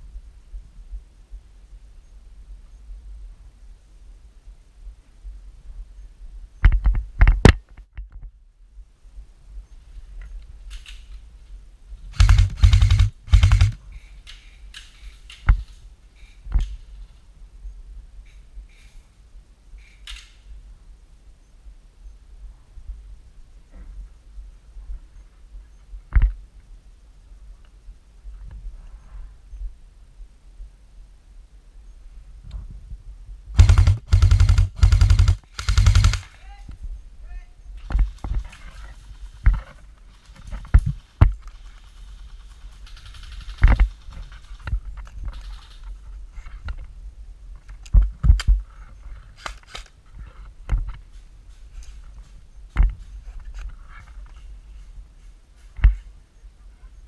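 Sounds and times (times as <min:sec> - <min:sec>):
airsoft gun full-auto bursts: 0:12.1 - 0:13.8, 0:33.6 - 0:36.4, 0:40.9 - 0:44.2
sharp clicks: 0:12.1 - 0:15.5, 0:33.6 - 0:36.4.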